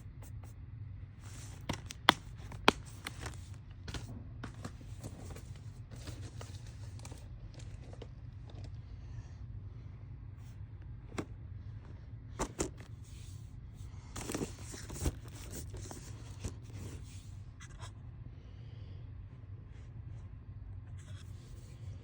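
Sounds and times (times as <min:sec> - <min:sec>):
low hum: 0:00.0 - 0:22.0
cases sliding and rustling: 0:01.2 - 0:08.1, 0:12.4 - 0:13.4, 0:14.1 - 0:17.4
plastic cases clicking: 0:01.4 - 0:05.4.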